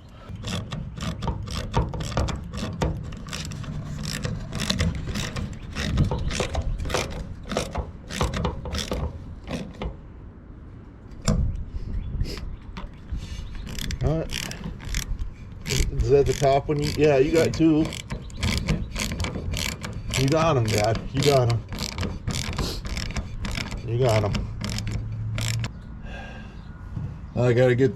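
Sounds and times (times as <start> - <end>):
ratchet wrench clicking: 13.6 - 25.7.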